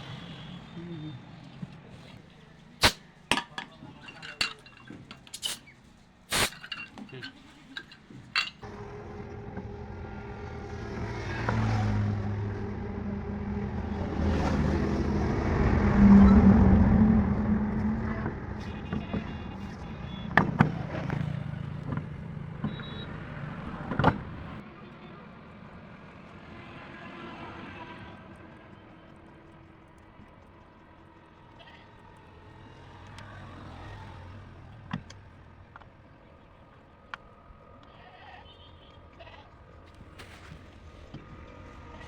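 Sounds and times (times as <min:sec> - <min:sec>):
vehicle engine passing: 0:08.6 - 0:37.7.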